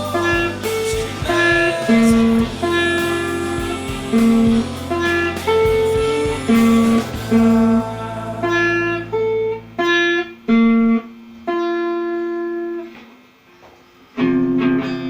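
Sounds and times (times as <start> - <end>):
steady low bass: 0.0 - 10.2
guitar melody: 0.0 - 12.8, 14.2 - 15.0.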